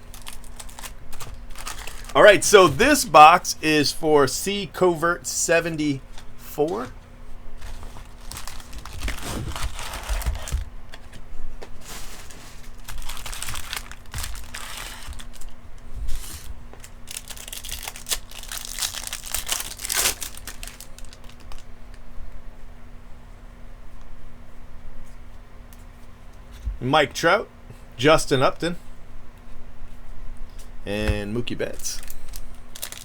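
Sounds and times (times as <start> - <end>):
foil wrapper crinkling and tearing: 0.0 - 3.0, 7.6 - 10.7, 11.8 - 15.6, 16.2 - 21.7, 31.9 - 33.0.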